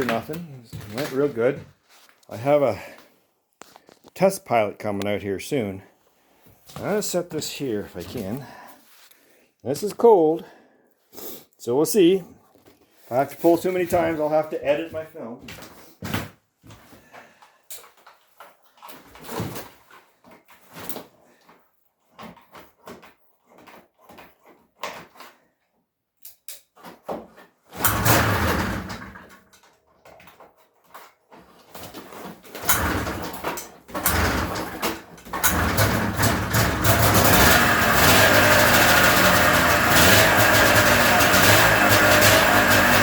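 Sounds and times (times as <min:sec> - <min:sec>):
snowmobile engine pull-starting: 0:27.8 - 0:29.3, 0:32.6 - 0:43.0.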